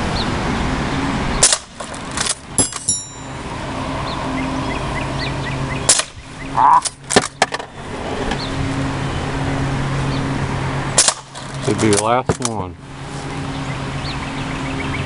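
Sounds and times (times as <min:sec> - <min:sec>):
short ping: 0:02.6 - 0:03.4.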